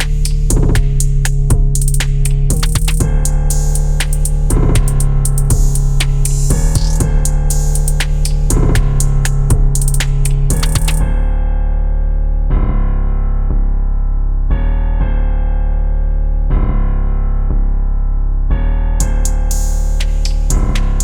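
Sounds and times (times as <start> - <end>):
electronic drum beat: 0.0 - 11.1, 19.0 - 21.0
sustained keyboard chords: 0.0 - 11.2, 19.0 - 21.0.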